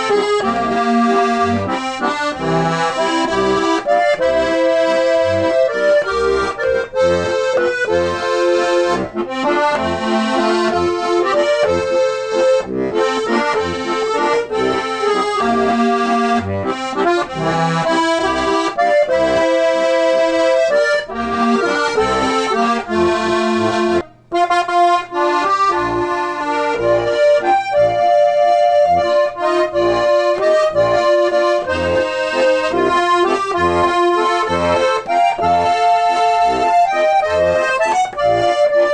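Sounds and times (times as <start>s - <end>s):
accordion playing: 0.0s - 38.9s.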